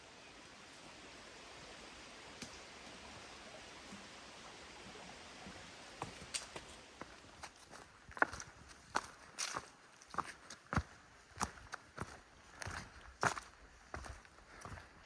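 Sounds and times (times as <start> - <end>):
faint steady hiss: 0.0 - 8.3
footsteps on forest trail: 0.0 - 15.0.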